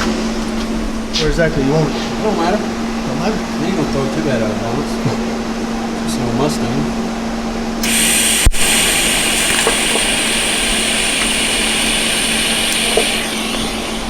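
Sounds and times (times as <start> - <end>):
welding arc hissing buzz: 7.8 - 14.0.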